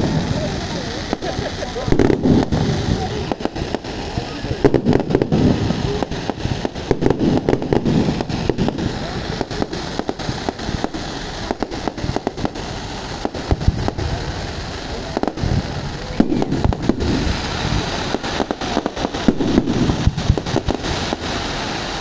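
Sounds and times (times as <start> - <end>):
fireworks bangs and crackles: 0.0 - 22.0
steady hiss: 0.0 - 22.0.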